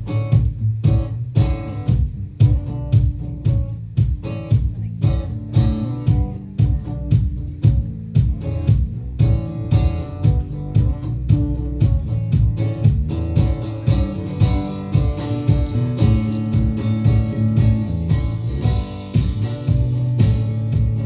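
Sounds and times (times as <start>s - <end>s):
country band playing: 1.4s - 21.0s.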